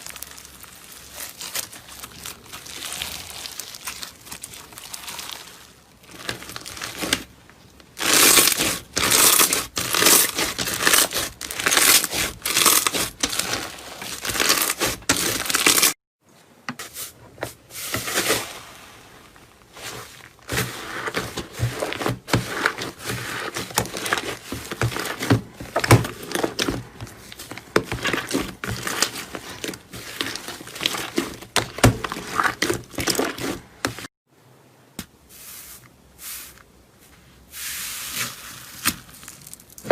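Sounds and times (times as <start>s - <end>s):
slime crackling and popping: 0.0s - 7.3s, 8.0s - 16.0s.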